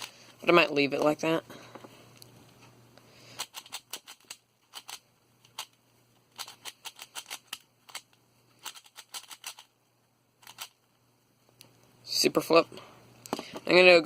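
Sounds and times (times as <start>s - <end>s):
puzzle cube layers clicking: 3.4s - 9.7s.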